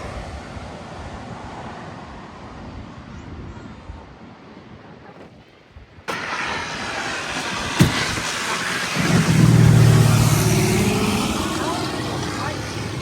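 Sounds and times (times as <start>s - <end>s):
low engine hum: 6.1s - 13.0s
loud rushing noise: 7.6s - 13.0s.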